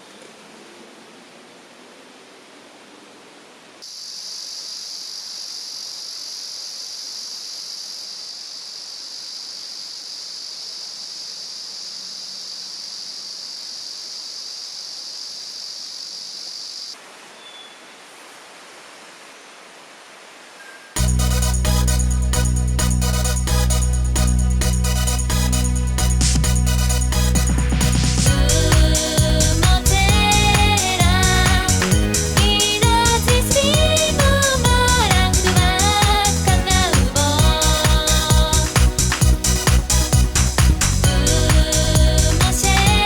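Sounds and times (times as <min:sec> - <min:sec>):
stream hissing: 0:00.0 - 0:43.0
insects buzzing: 0:03.8 - 0:17.4.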